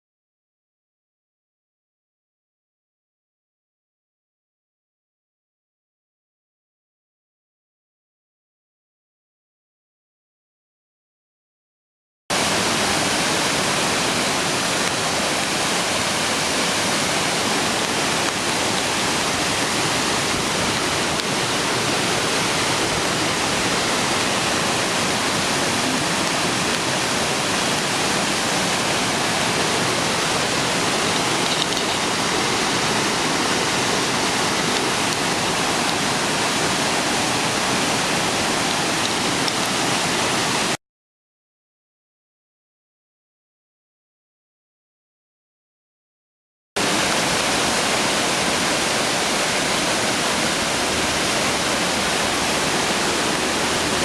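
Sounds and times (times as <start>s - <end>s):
waterfall rushing: 12.3s - 40.8s, 46.8s - 54.0s.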